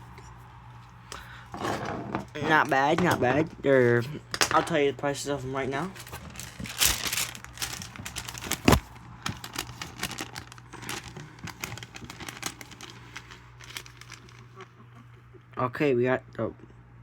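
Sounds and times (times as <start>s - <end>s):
paper and plastic crinkling: 4.5s - 14.7s.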